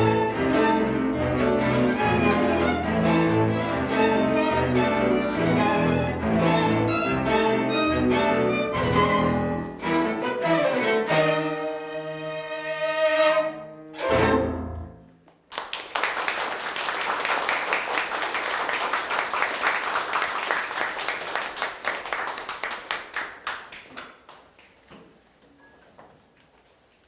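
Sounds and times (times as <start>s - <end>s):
audience applauding: 15.5s - 24.6s.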